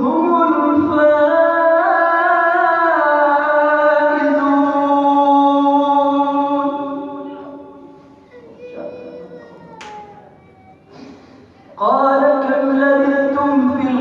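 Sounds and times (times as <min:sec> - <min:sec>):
man reciting melodically: 0:00.0 - 0:07.5, 0:11.8 - 0:14.0.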